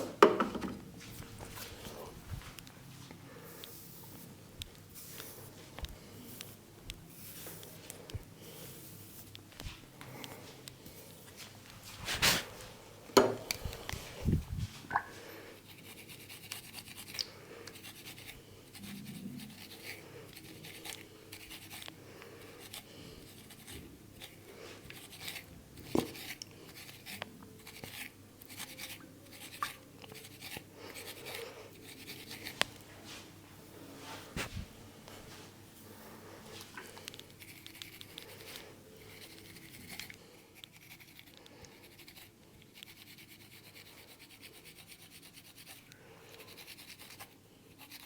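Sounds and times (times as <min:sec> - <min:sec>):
hands scratching through hair: 0:11.4 - 0:12.6.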